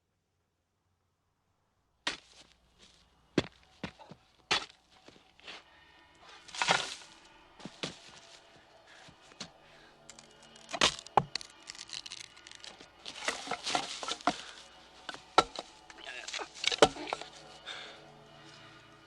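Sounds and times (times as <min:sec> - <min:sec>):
gritty scraping and crunching: 0:02.1 - 0:18.7
sharp cracks and knocks: 0:10.1 - 0:17.3.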